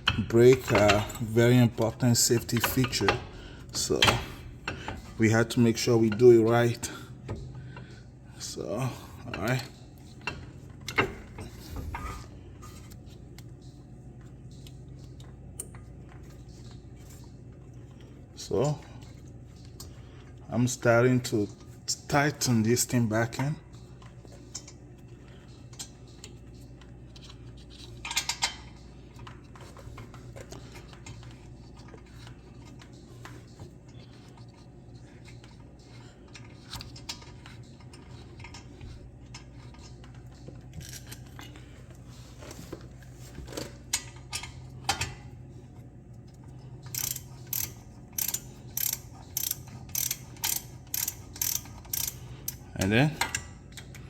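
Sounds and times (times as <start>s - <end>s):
steady low hum: 0.0s - 54.0s
ratchet wrench clicking: 46.8s - 52.6s.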